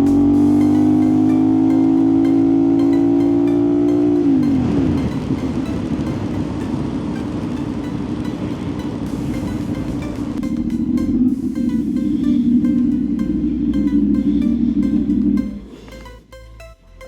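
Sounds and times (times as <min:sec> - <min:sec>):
motorcycle engine running: 0:00.0 - 0:04.7.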